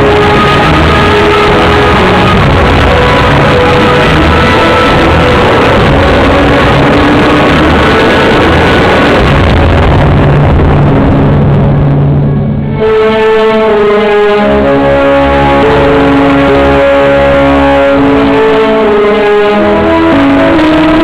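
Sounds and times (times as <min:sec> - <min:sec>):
loud rock music with guitar: 0:00.0 - 0:13.2.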